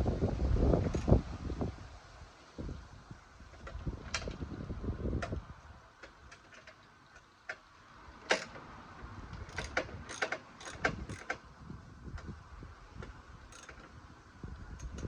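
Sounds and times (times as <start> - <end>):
metallic tool clicks and clinks: 13.5 - 13.9.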